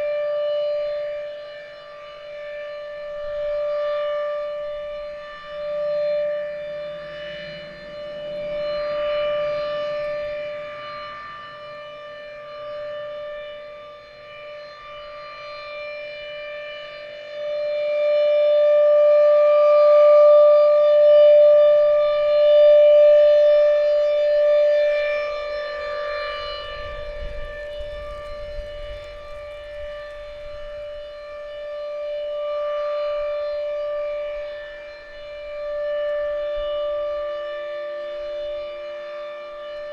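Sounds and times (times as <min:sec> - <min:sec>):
warning siren steady tone: 0:00.0 - 0:39.9
wind rumble on microphone: 0:21.0 - 0:39.9.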